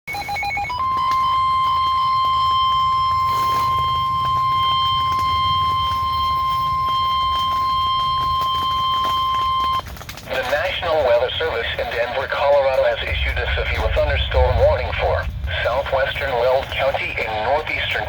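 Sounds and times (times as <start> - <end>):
high-pitched alarm tone: 0.1 - 9.8
quick beeps: 0.1 - 9.8.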